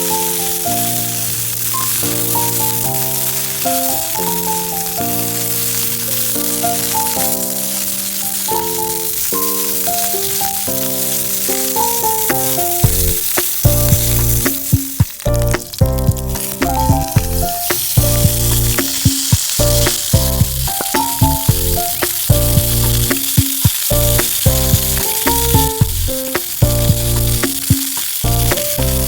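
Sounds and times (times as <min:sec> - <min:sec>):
food sizzling in a pan: 0:00.0 - 0:29.0
background music with beat: 0:11.8 - 0:29.0.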